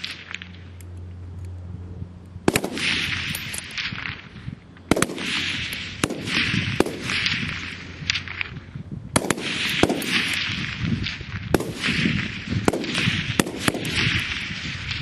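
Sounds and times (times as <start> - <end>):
distant fainter gunshots: 2.4 - 15.0
rifle shots: 2.4 - 15.0
rolling echo: 2.4 - 15.0.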